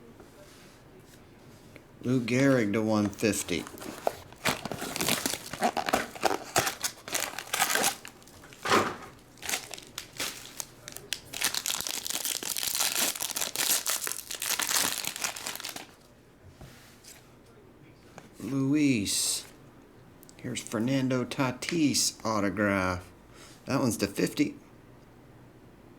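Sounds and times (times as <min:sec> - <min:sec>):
packaging crinkling and tearing: 0:03.0 - 0:16.0.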